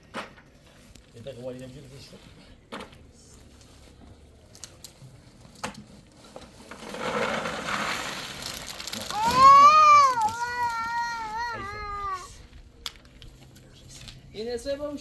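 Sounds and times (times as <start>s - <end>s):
crinkling rustling: 3.3s - 14.3s.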